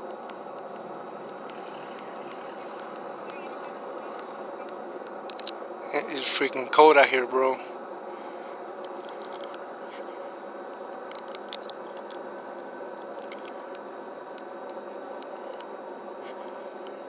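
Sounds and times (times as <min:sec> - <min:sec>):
faint clicks: 0:00.0 - 0:05.6
engine hum: 0:00.0 - 0:17.0.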